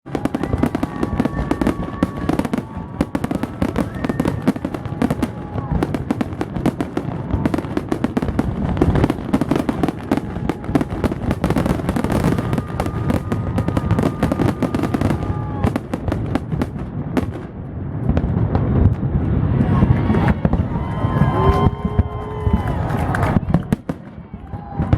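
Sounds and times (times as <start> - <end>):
fireworks bursting and crackling: 0.0 - 24.9.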